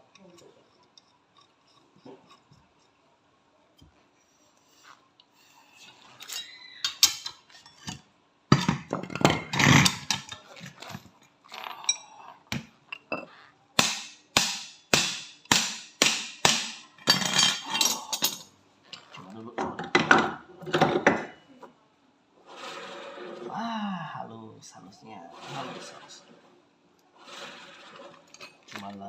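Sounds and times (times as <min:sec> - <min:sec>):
metal tools clattering: 0:06.2 - 0:12.0, 0:17.0 - 0:21.3.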